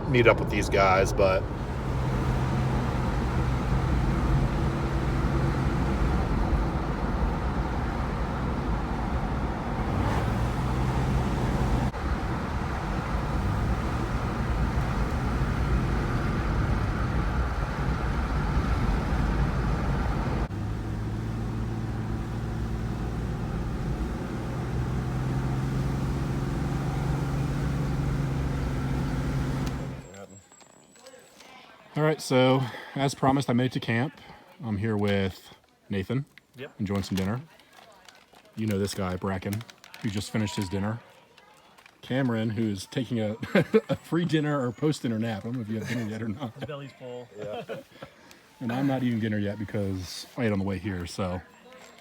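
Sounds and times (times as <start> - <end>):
road and tyre noise: 0.0 - 31.5, 36.3 - 52.0
low engine drone: 1.1 - 30.0.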